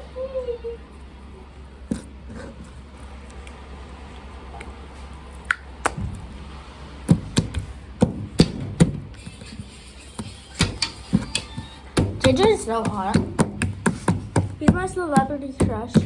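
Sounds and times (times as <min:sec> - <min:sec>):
low steady hum: 0:00.0 - 0:16.0
sharp knocks: 0:07.1 - 0:16.0.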